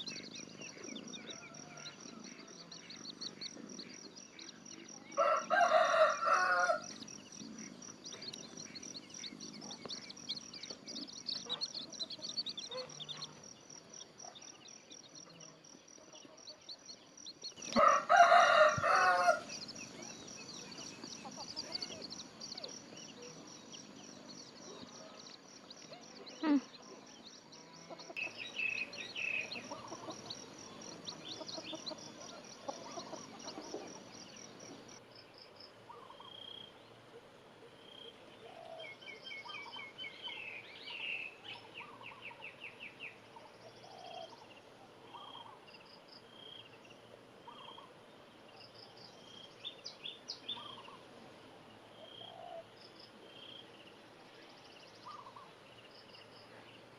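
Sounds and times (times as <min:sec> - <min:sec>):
small birds chirping: 0:00.0 - 0:56.9
chicks peeping: 0:05.7 - 0:13.4, 0:17.3 - 0:23.0, 0:27.8 - 0:34.9.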